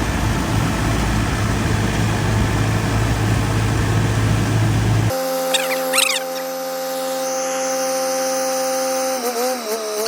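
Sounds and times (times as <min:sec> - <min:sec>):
tractor engine running: 0:00.0 - 0:06.5.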